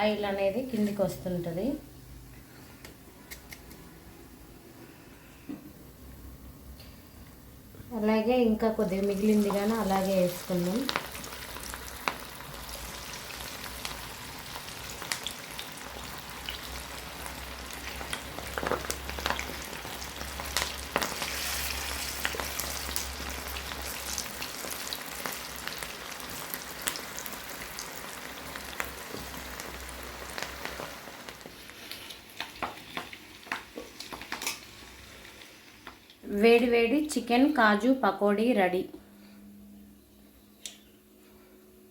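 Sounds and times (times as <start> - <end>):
deep-frying sizzle with pops: 8.7 - 37.2.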